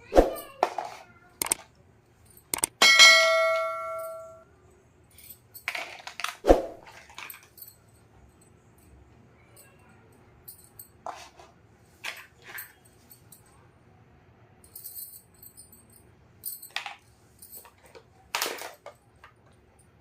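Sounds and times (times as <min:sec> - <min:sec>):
small hard pieces clicking: 0:01.4 - 0:01.6, 0:02.5 - 0:02.8
metallic ding: 0:02.6 - 0:04.4.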